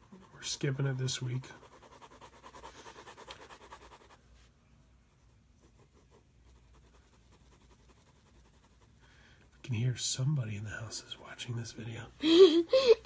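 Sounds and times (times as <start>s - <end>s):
pen scratching on paper: 0.0s - 4.2s, 5.6s - 9.6s.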